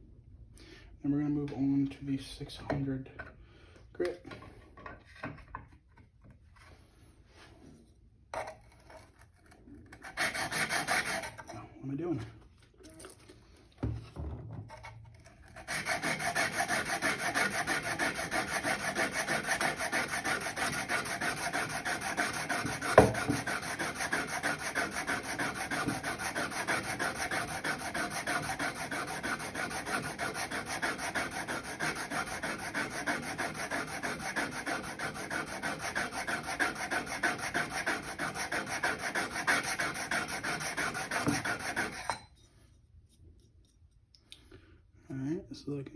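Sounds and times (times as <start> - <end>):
steel rubbing on abrasive: 15.6 - 42.2
sharp knock: 23.0 - 23.4.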